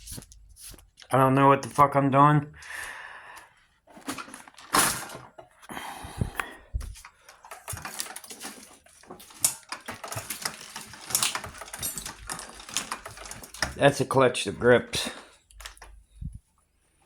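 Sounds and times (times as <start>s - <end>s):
metal parts clicking and rattling: 3.9s - 5.7s, 6.9s - 16.0s.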